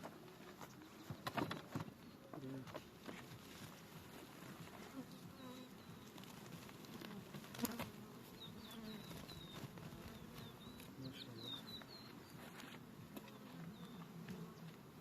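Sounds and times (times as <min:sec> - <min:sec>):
honeybees buzzing: 0:00.0 - 0:15.0
small bird chirping: 0:08.4 - 0:12.7.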